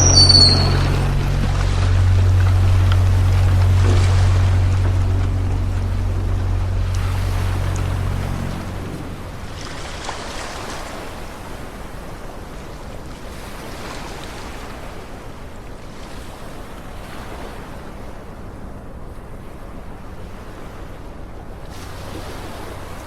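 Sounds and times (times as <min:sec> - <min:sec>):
sea water surging: 0:00.0 - 0:23.0
wind: 0:00.0 - 0:23.0.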